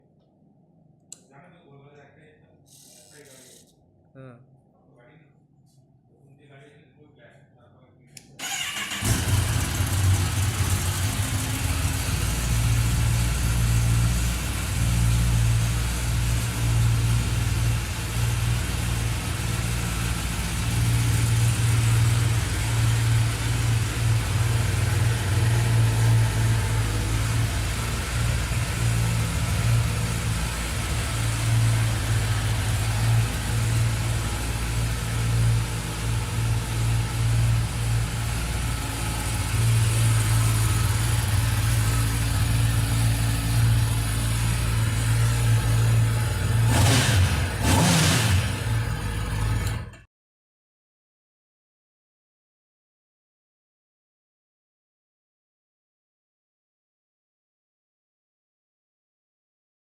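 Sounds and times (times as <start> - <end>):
motorcycle engine idling: 8.4 - 49.6.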